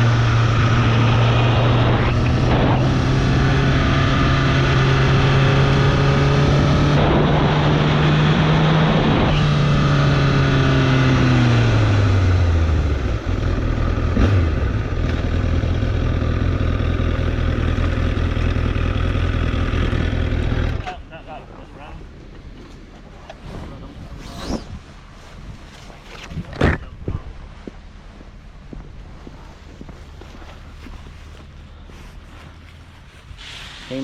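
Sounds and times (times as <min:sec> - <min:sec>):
wind noise: 0:00.0 - 0:15.7, 0:22.0 - 0:34.0
motorcycle engine: 0:00.0 - 0:25.1.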